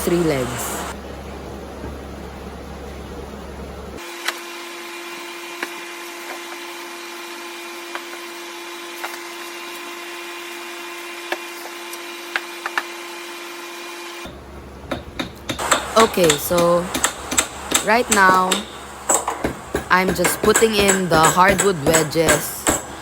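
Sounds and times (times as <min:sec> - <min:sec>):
steady hum: 0:00.0 - 0:04.0, 0:14.2 - 0:23.0.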